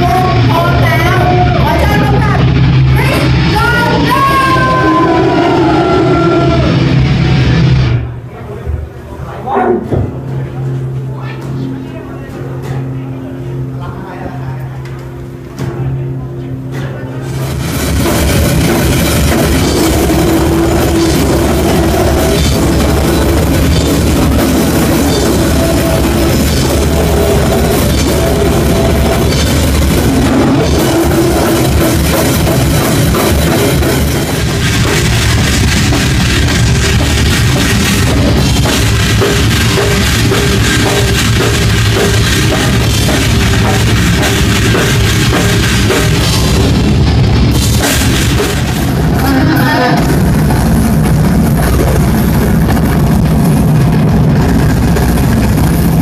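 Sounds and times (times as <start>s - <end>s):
death metal band playing: 0.0s - 8.4s, 9.6s - 56.0s.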